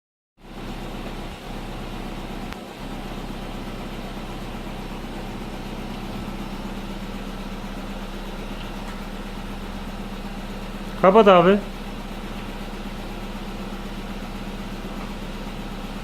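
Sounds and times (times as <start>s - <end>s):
low mechanical hum: 0.4s - 16.0s.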